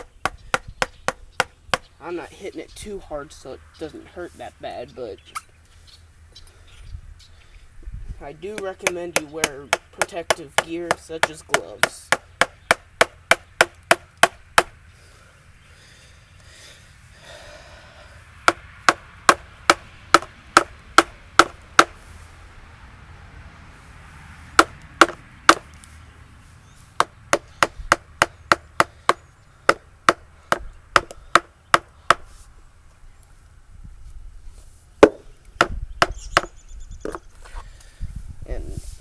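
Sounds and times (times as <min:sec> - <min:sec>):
mallet striking chisel into log: 0:00.0 - 0:01.9, 0:08.5 - 0:14.8, 0:18.5 - 0:22.0, 0:24.6 - 0:25.7, 0:27.0 - 0:32.2, 0:35.0 - 0:36.5.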